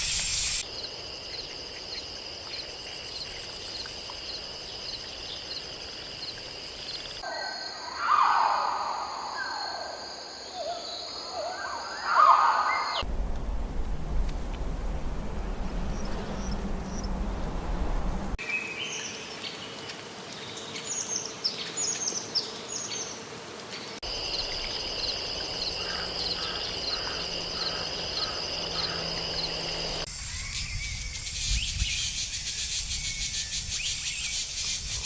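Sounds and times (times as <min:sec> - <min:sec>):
high-pitched insect trilling: 0:00.0 - 0:02.0
lower animal call: 0:07.2 - 0:13.0
short high falling calls: 0:07.2 - 0:13.0
noisy rumbling: 0:13.0 - 0:18.4.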